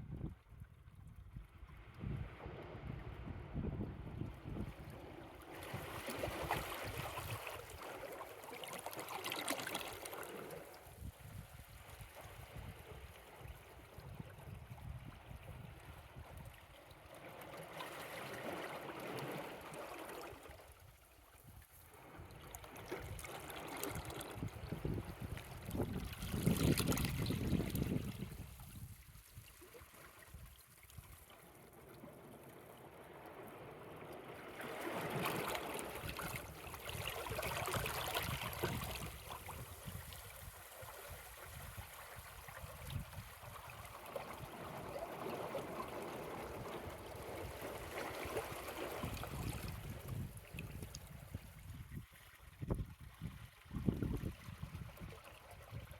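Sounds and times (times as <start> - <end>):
waves lapping over rocks: 5.4 - 12.5, 17.3 - 20.5, 22.0 - 51.4.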